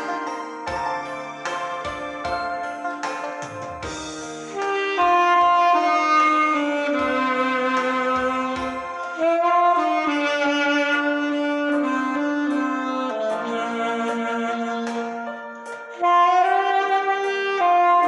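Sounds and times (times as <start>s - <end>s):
instrumental accompaniment: 0.0s - 18.0s
saxophone melody: 0.0s - 18.0s.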